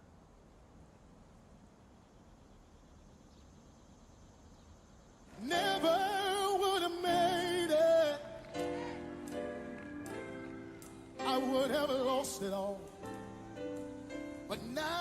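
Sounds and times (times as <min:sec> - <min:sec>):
lower backing vocal tones: 0:05.3 - 0:15.0
person singing gospel with vibrato: 0:05.3 - 0:15.0.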